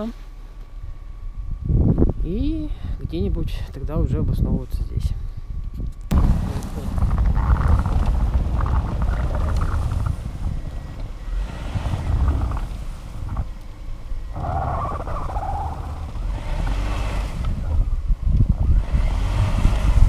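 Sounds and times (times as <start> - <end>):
wind rumbling on microphone: 0.7 - 20.0
car engine running: 6.1 - 20.0.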